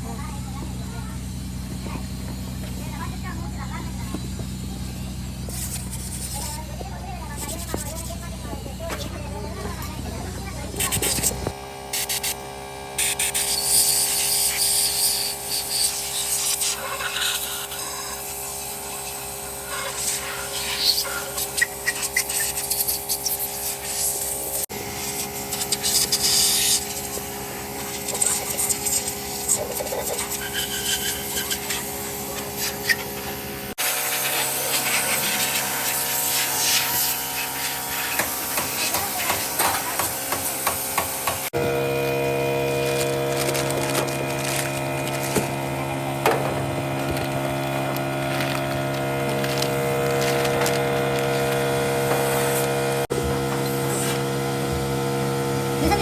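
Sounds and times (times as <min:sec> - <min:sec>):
steady machine hum: 0:00.0 - 0:56.0
hand scraping on metal parts: 0:05.5 - 0:06.8.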